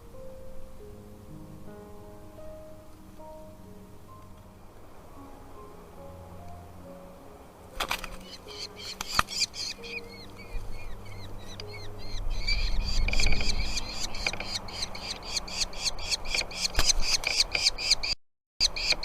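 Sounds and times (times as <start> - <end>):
nestling birds begging chirps: 7.8 - 19.0.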